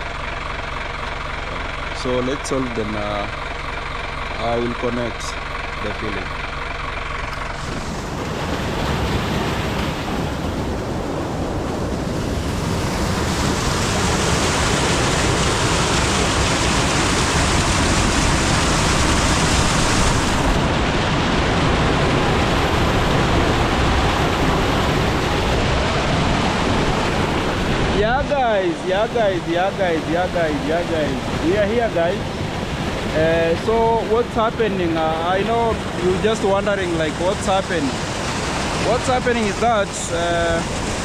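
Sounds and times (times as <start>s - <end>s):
waterfall rushing: 7.6s - 41.0s.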